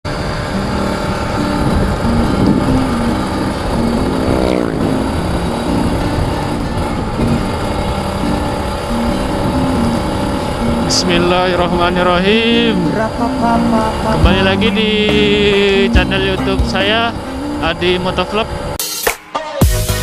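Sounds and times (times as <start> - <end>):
motorcycle engine running: 0.0 - 18.8
road noise: 0.0 - 18.8
wind noise: 0.1 - 12.9.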